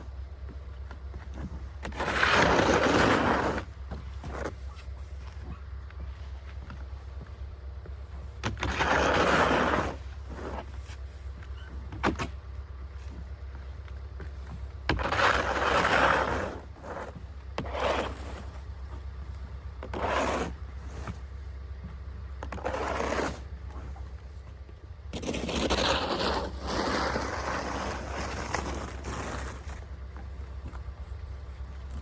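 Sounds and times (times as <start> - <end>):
snow shovel scraping snow: 1.4 - 5.4, 8.4 - 11.3, 14.9 - 18.7, 19.8 - 21.3, 22.4 - 24.0, 25.1 - 29.9.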